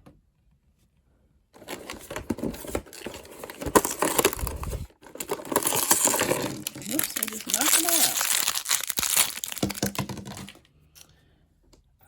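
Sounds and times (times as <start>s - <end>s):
plastic packaging crinkling: 1.6s - 10.6s.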